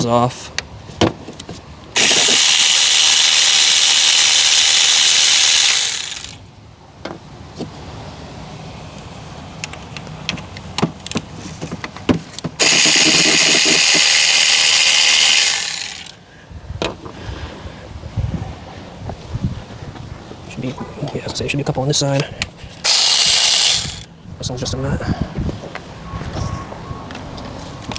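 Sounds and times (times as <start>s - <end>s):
handheld power tool spinning bolts: 2.0s - 6.4s, 12.6s - 16.2s, 22.8s - 24.1s.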